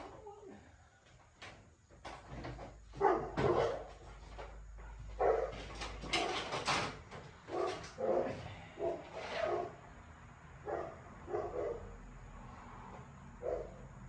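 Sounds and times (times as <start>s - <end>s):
dog barking: 3.0s - 4.0s, 4.8s - 5.6s, 7.5s - 9.8s, 10.6s - 11.9s, 13.4s - 13.8s.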